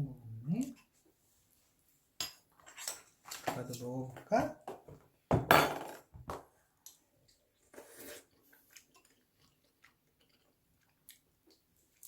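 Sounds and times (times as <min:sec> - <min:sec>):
person chewing: 0:07.9 - 0:12.0.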